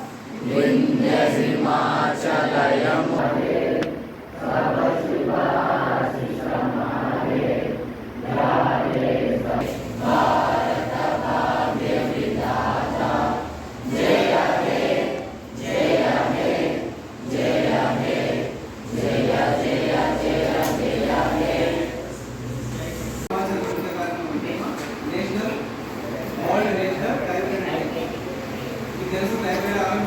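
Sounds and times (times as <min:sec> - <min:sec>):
many voices in unison: 0:00.0 - 0:22.6.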